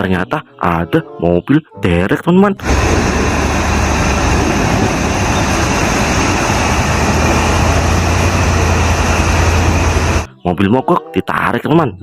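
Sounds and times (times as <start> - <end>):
heavy vehicle engine running: 2.6 - 10.3.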